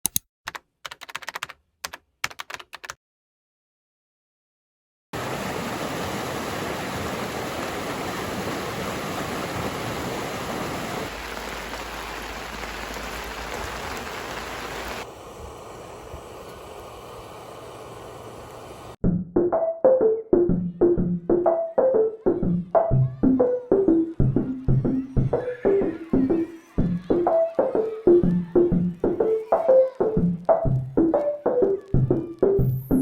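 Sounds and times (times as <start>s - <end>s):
sharp clicks: 0.0s - 3.0s
mountain stream rushing: 5.2s - 19.0s.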